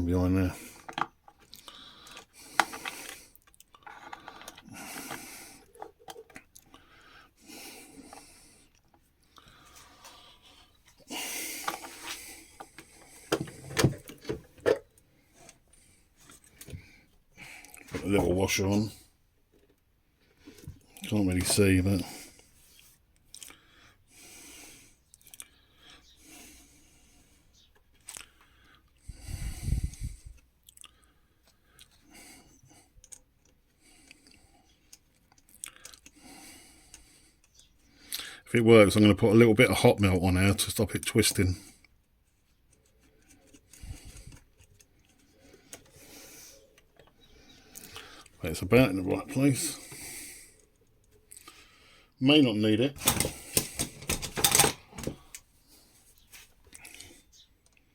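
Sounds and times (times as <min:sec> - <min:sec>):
plastic parts clicking and rubbing: 0:00.6 - 0:06.8, 0:08.1 - 0:16.9, 0:19.4 - 0:22.0, 0:41.0 - 0:48.4, 0:53.0 - 0:55.5.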